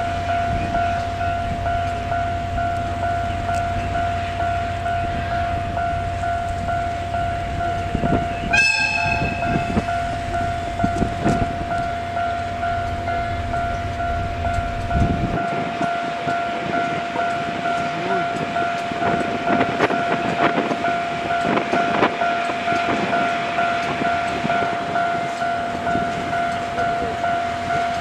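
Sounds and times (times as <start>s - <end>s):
diesel locomotive engine rumble: 0.0s - 28.0s
level crossing alarm ringing: 0.0s - 28.0s
locomotive horn blast: 0.9s - 15.4s.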